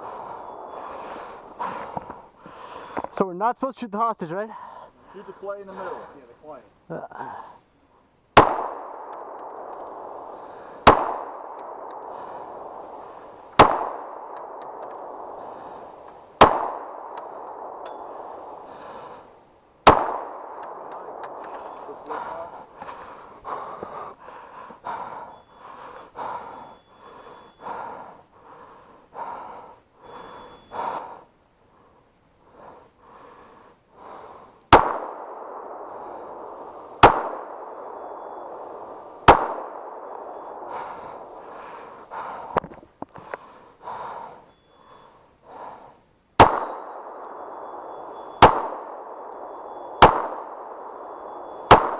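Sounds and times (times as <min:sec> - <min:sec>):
pistol shots: 0:08.4 - 0:15.5, 0:16.4 - 0:18.7, 0:19.8 - 0:22.6, 0:34.7 - 0:41.3, 0:46.4 - 0:51.9.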